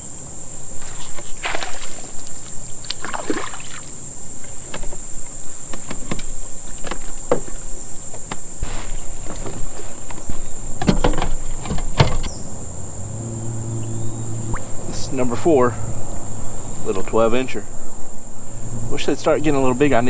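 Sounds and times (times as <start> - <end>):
insect chorus drone: 0.0 - 20.0
gear knocking and clicking: 4.7 - 12.4.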